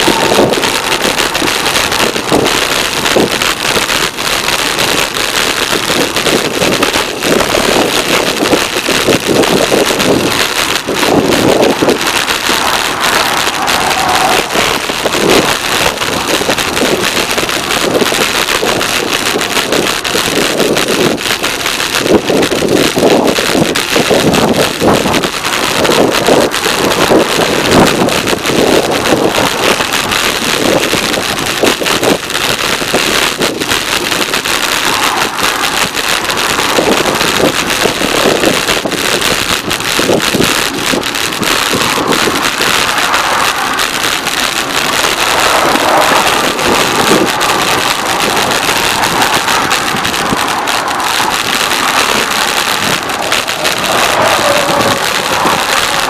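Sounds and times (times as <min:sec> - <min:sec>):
highway traffic: 0:00.0 - 0:56.0
wind buffeting microphone: 0:00.0 - 0:56.0.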